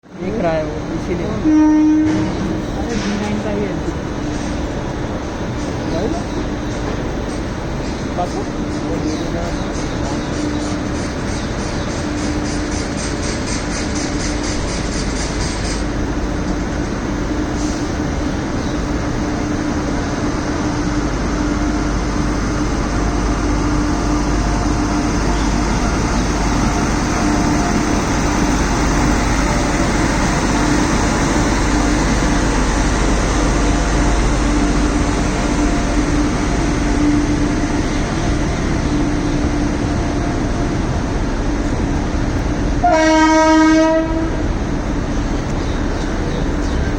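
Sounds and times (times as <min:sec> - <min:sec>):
electric locomotive humming: 0:00.0 - 0:46.9
train horn: 0:01.4 - 0:02.5, 0:42.8 - 0:44.5.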